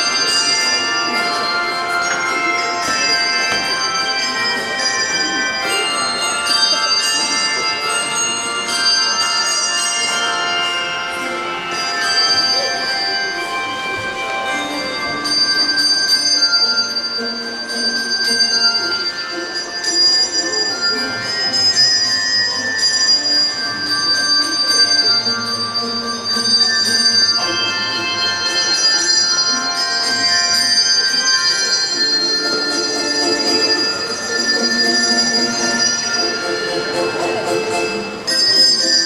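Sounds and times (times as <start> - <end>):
handbell choir ringing chords: 0.0 - 39.0.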